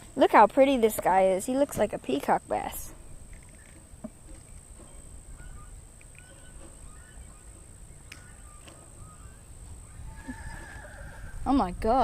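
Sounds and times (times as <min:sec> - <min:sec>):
bird calls: 0:02.3 - 0:11.8.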